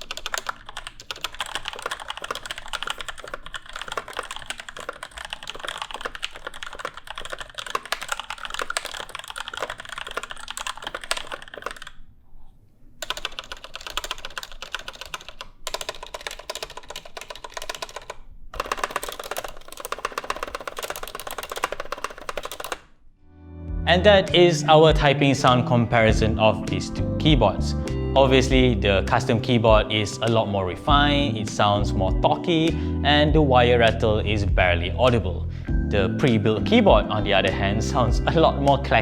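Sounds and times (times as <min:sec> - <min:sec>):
fast typing on mechanical keyboard: 0:00.0 - 0:12.0, 0:13.0 - 0:22.9.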